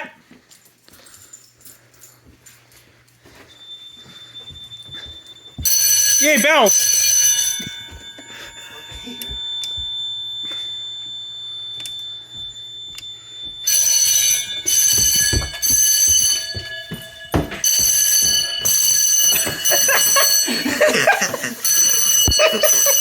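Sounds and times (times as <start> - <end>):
fire alarm bells ringing: 0.0 - 23.0
faint steady tone: 7.6 - 14.7.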